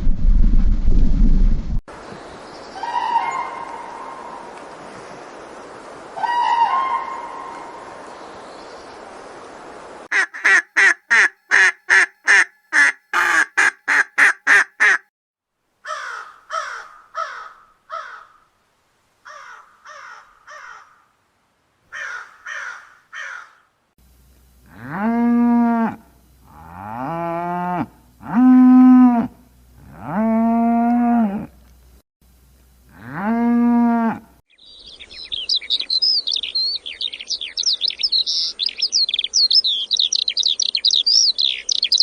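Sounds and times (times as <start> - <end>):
crow cawing: 10.1 - 15.0, 15.8 - 18.5, 19.2 - 21.1, 21.9 - 23.7
duck quacking: 10.1 - 15.1
cow mooing: 24.6 - 31.6, 32.9 - 34.3.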